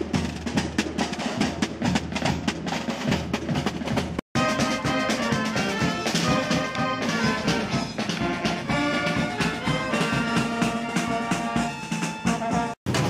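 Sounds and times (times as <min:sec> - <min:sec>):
brass band playing: 0:03.9 - 0:13.0.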